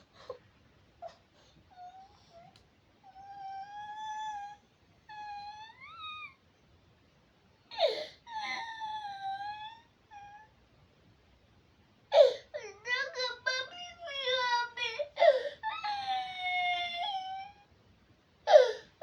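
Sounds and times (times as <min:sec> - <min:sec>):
toddler whining and wailing: 0:03.1 - 0:06.4, 0:12.2 - 0:17.6.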